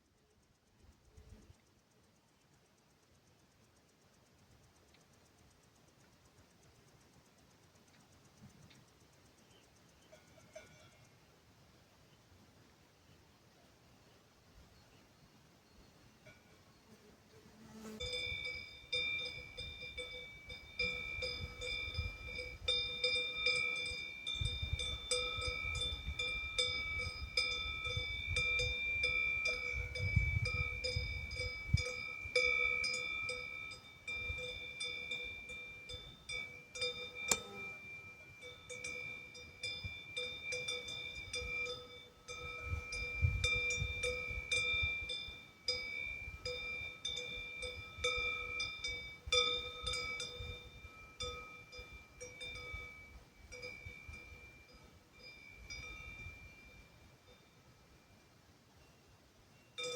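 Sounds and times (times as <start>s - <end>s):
cowbells clanking: 10.0s - 11.2s, 18.0s - 59.9s.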